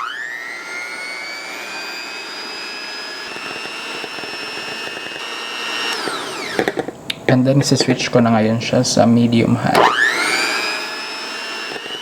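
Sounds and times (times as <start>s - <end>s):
electric mixer whining: 0.0s - 7.0s, 9.7s - 12.0s.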